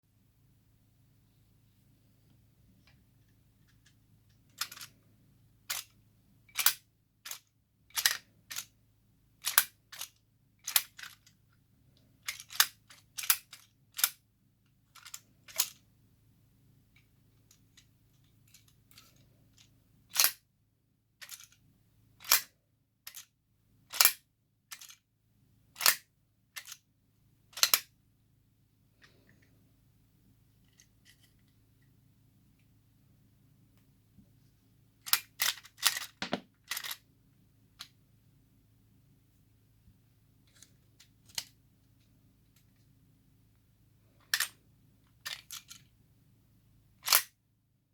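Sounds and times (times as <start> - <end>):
plastic fidget toy clicking: 4.5 - 4.9, 5.7 - 8.7, 9.4 - 11.4, 12.2 - 14.2, 15.0 - 15.8, 18.5 - 20.4, 21.2 - 21.6, 22.2 - 22.5, 25.8 - 26.8, 27.5 - 27.9, 35.0 - 37.0, 45.2 - 45.9, 47.0 - 47.3.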